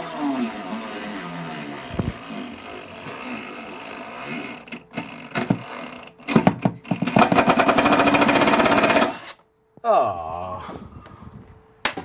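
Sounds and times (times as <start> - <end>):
power screwdriver spinning: 0.0 - 6.4, 7.0 - 9.4
knocks and clicks: 4.7 - 7.8.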